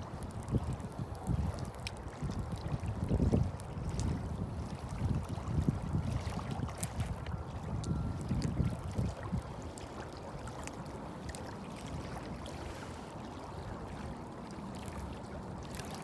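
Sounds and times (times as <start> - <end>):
rush of wind and water: 0.0 - 16.0
wind buffeting microphone: 0.0 - 16.0
faint small clicks: 0.2 - 2.1.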